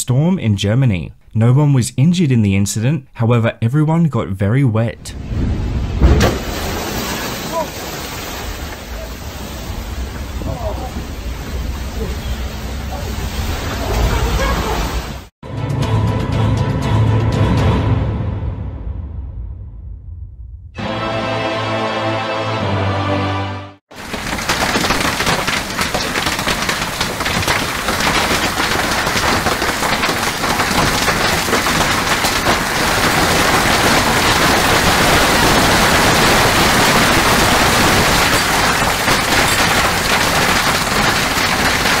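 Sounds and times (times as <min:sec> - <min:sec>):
heavy rain pelting a surface: 0:06.2 - 0:15.3, 0:23.9 - 0:42.0.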